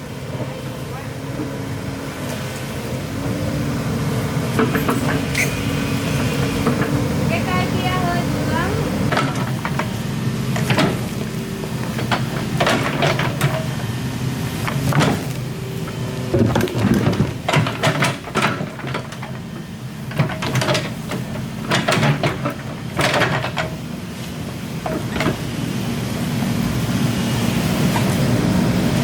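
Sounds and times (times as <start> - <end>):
excavator diesel engine running: 0.0 - 29.0
knocks and scrapes: 16.3 - 19.4.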